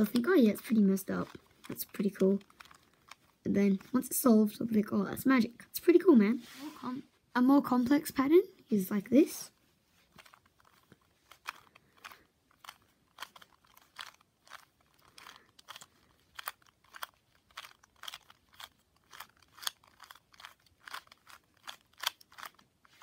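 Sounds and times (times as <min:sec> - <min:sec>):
puzzle cube plastic clicks: 0:00.0 - 0:04.8, 0:10.1 - 0:23.0.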